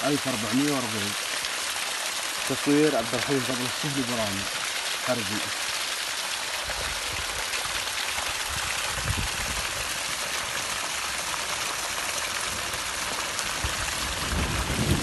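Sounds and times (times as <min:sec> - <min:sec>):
heavy rain: 0:00.0 - 0:15.0
rushing storm runoff: 0:00.0 - 0:15.0.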